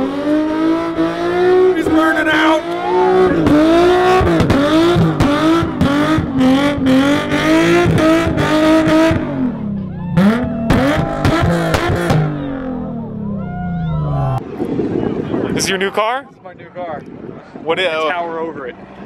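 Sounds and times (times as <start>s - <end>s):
car engine revving high: 0.0s - 14.4s.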